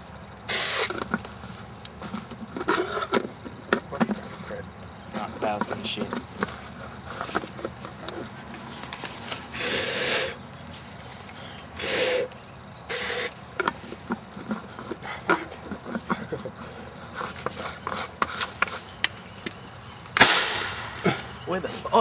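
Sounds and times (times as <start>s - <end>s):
aerosol can spraying: 0.5s - 1.0s, 12.9s - 13.4s.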